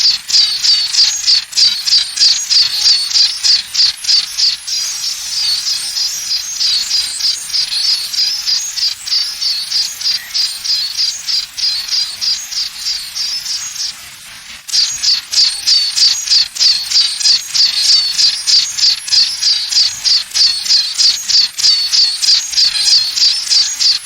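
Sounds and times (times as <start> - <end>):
high-pitched pulsing chirping: 0.0 - 24.0.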